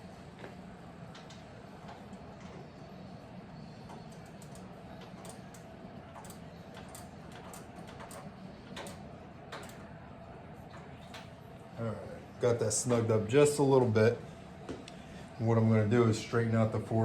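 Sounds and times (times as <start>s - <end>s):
faint steady hum: 0.0s - 17.0s
ratchet wrench clicking: 6.2s - 8.2s.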